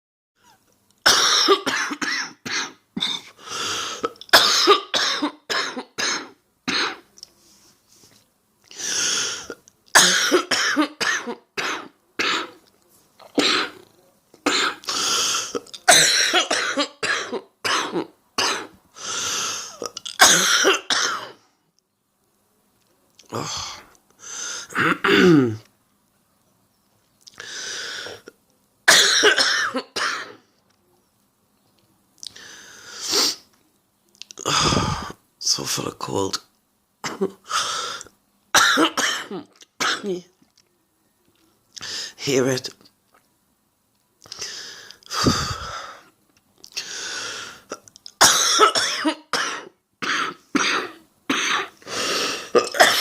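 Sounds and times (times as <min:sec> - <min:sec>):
woman coughing: 0:15.9 - 0:18.7, 0:28.9 - 0:30.4, 0:38.6 - 0:40.2, 0:48.2 - 0:51.7, 0:52.6 - 0:53.0.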